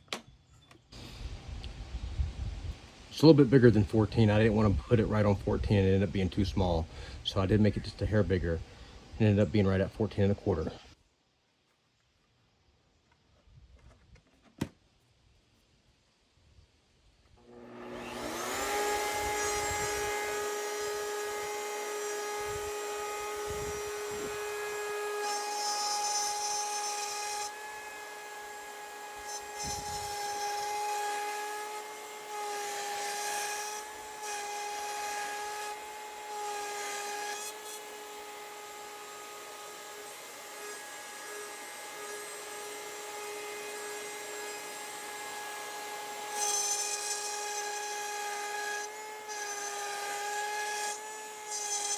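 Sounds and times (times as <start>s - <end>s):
router whining: 17.3s - 51.9s
router bit cutting wood: 17.4s - 51.9s.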